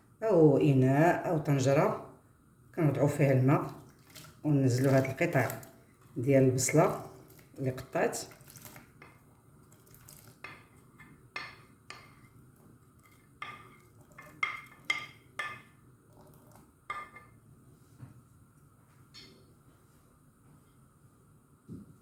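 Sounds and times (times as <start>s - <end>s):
onion chunks plopping into water: 3.6s - 5.8s, 8.2s - 9.0s.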